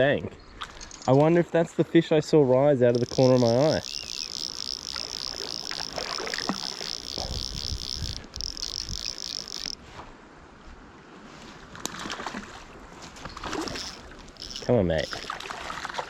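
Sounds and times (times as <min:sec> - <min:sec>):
insects chirring: 0:02.9 - 0:09.8, 0:13.6 - 0:15.6.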